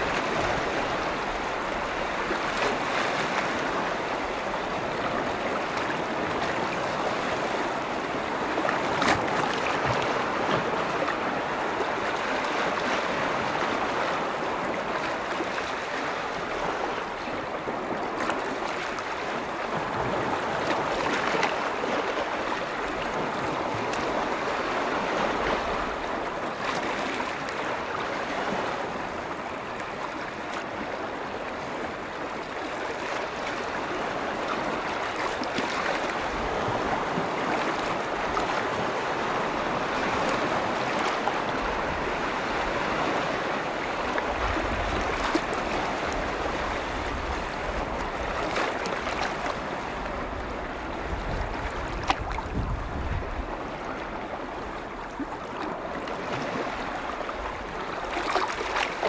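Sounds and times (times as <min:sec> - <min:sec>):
waves washing: 0:00.0 - 0:59.0
small water splashes: 0:55.2 - 0:59.0.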